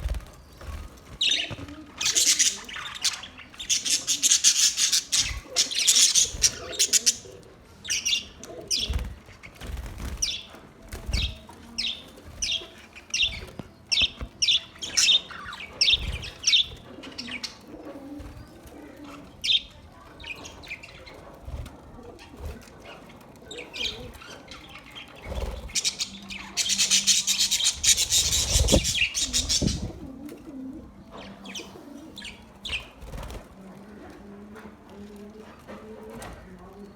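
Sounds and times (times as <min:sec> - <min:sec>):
wings flapping: 0:00.0 - 0:07.3, 0:08.7 - 0:19.1, 0:21.0 - 0:23.2, 0:25.1 - 0:30.4, 0:32.6 - 0:33.6
budgerigars chirping: 0:02.0 - 0:07.3, 0:25.6 - 0:29.9.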